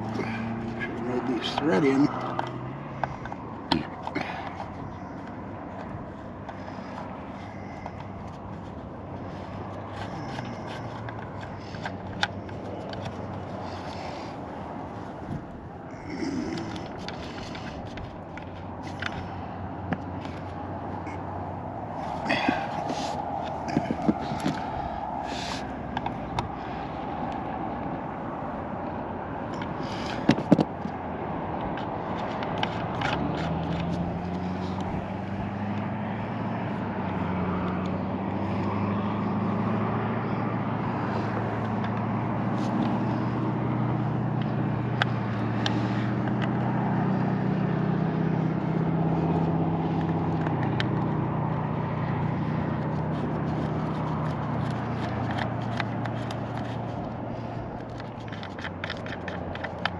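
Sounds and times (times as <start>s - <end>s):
engine hum: 0.0s - 59.9s
sharp clicks and knocks: 29.5s - 31.0s, 52.8s - 59.9s.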